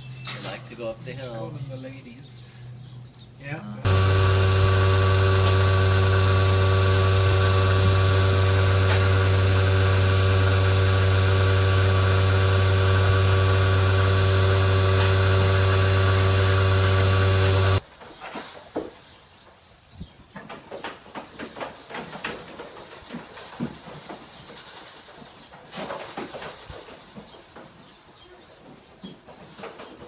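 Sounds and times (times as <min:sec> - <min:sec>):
motor humming: 0:03.8 - 0:17.8.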